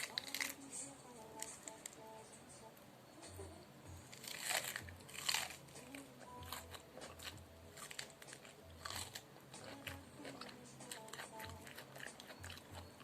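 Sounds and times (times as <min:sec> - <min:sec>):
crunchy chewing: 0:04.0 - 0:13.0.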